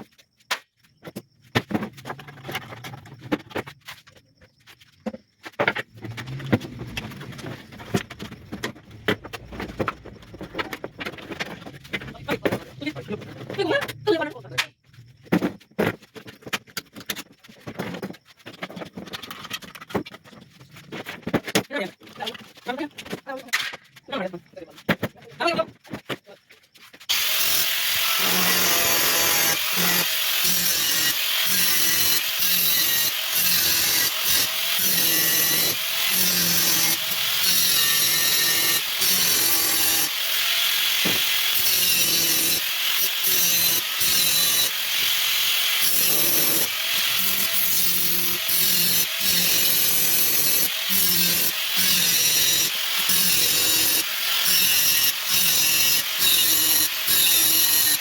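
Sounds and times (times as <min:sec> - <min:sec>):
band saw blade rasping through wood: 0:27.1 - 0:58.0.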